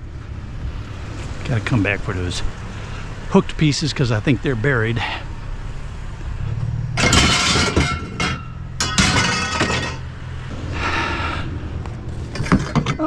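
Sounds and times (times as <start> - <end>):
scrap metal clanking and scraping: 6.9 - 10.2, 12.0 - 13.0.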